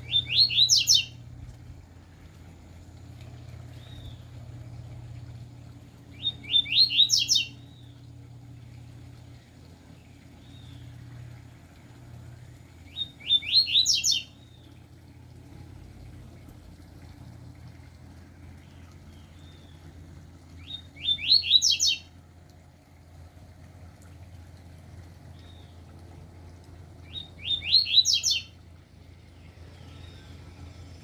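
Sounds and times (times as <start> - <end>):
bird call notes: 0.0 - 1.2, 6.2 - 8.0, 12.9 - 14.4, 20.6 - 22.1, 27.1 - 28.5
songbird singing: 0.0 - 1.3, 3.5 - 4.5, 6.0 - 8.2, 12.8 - 14.8, 18.6 - 22.1, 27.0 - 28.6
steady low hum: 0.0 - 31.0.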